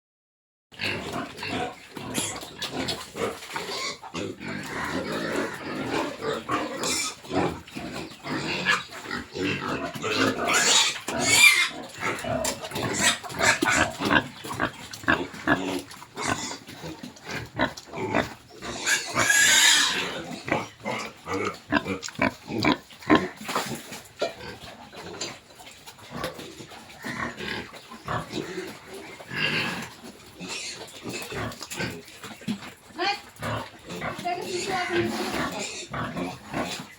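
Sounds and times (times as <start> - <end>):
pigs grunting: 0.8 - 36.9
pig high-pitched cries: 8.4 - 16.6, 17.5 - 23.3.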